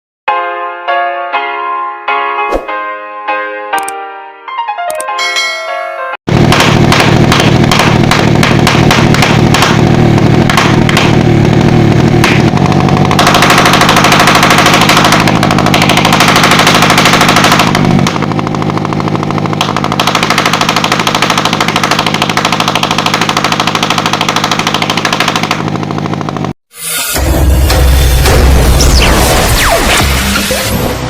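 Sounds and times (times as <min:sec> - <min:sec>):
small engine running: 0:06.3 - 0:26.6.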